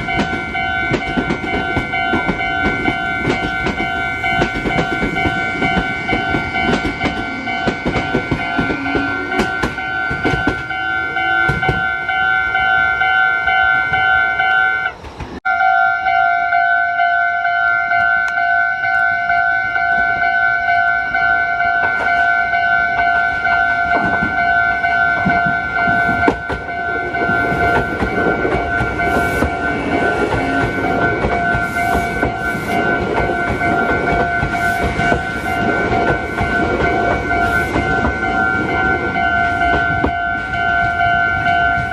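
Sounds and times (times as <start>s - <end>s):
train wheels clattering over rail joints: 0.0s - 12.8s, 21.6s - 41.9s
level-crossing warning bell ringing: 0.0s - 41.9s.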